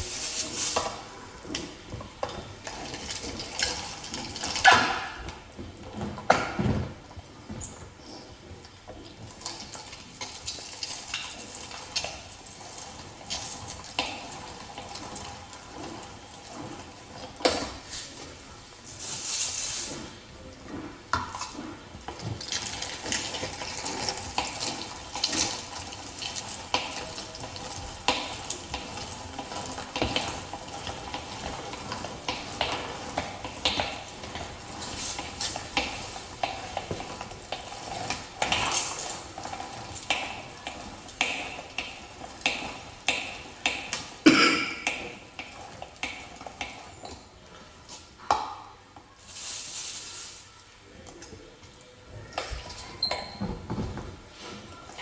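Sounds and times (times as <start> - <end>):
meat grinder scraping and clicking: 0.0 - 6.6, 7.6 - 44.2.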